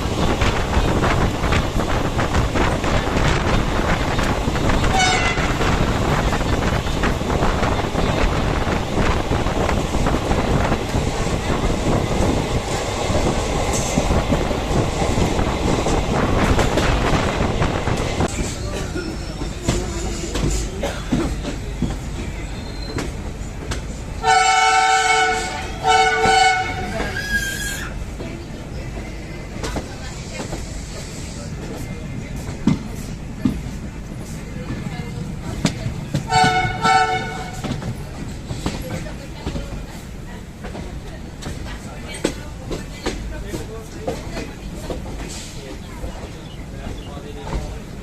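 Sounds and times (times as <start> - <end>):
wind buffeting microphone: 0.0 - 20.6
train wheels clicking on rails: 0.0 - 24.4, 25.0 - 48.0
train rumbling: 0.0 - 48.0
locomotive horn blasts: 4.9 - 5.6, 24.2 - 27.1, 36.3 - 37.7.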